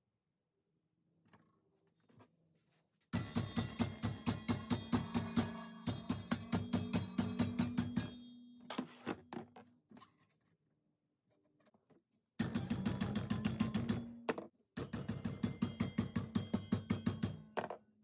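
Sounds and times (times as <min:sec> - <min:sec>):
hammer blows on ringing sheet metal: 0:03.2 - 0:08.6.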